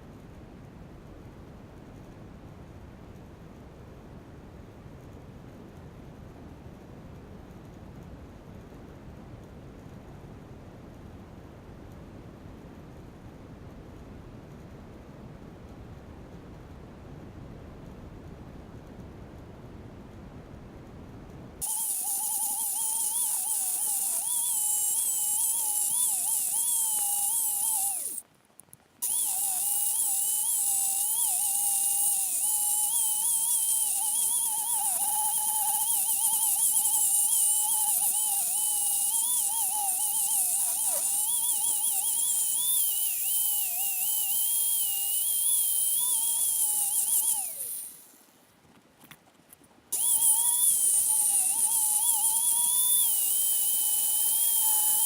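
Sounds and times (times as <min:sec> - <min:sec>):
angle grinder grinding steel: 0:21.6 - 0:28.2, 0:29.0 - 0:48.3, 0:50.0 - 0:55.0.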